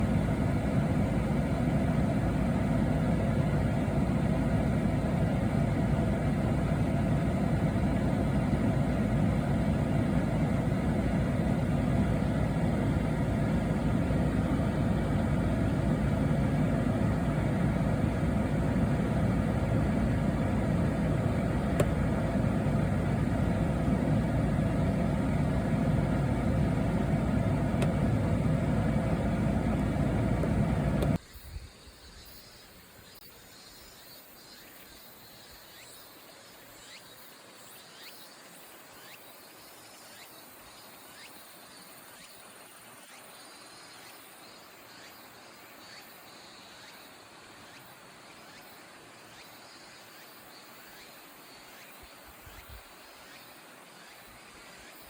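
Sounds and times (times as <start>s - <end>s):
car engine running: 0.0s - 31.2s
faint steady tones: 0.0s - 31.2s.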